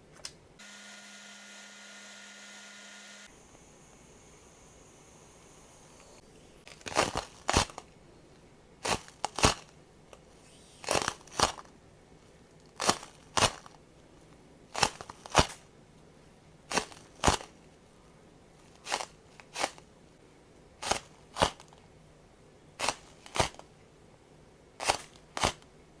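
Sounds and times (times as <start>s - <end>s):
plastic balloon crinkling: 6.7s - 8.0s, 8.8s - 11.7s, 12.6s - 13.8s, 14.8s - 15.6s, 16.7s - 17.6s, 18.7s - 19.9s, 20.8s - 21.8s, 22.8s - 23.7s, 24.8s - 25.6s.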